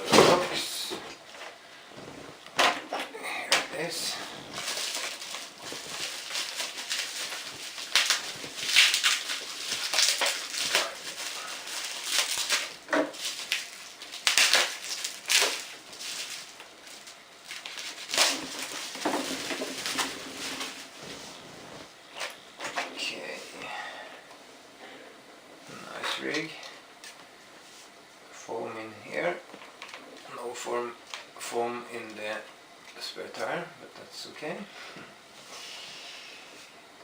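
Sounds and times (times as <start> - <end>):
box packaging rustling: 3.5 - 21.9
packaging crackles: 3.5 - 21.9.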